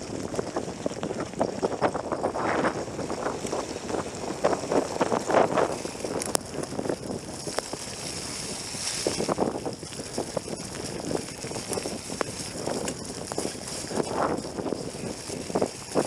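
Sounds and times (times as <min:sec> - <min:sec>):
bike clicks and rattles: 0:00.0 - 0:16.0
wind buffeting microphone: 0:00.0 - 0:16.0.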